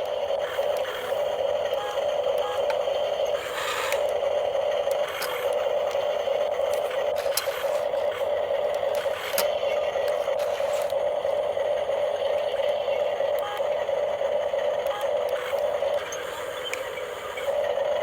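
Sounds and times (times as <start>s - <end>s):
small electric motor whirring: 0.0s - 11.9s.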